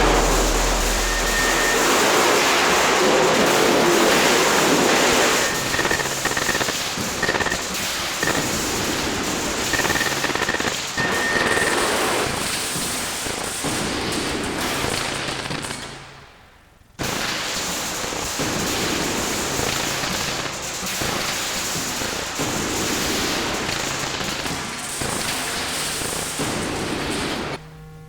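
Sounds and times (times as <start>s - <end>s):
fireworks crackling and popping: 0.0s - 6.7s.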